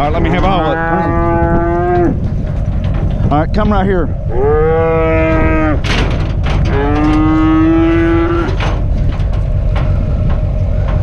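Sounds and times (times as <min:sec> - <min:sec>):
cow mooing: 0:00.0 - 0:02.3, 0:04.2 - 0:08.9
sharp knocks: 0:05.8 - 0:11.0.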